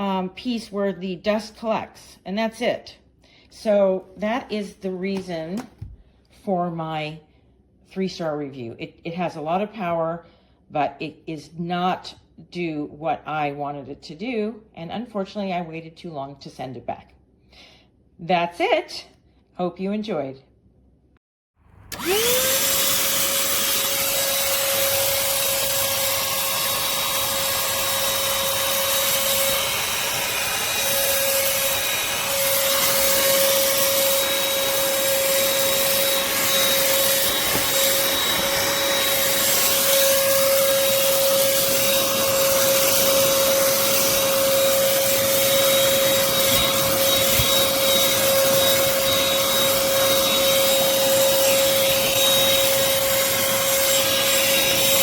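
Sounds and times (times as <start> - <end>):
handheld vacuum running: 21.9 - 55.0.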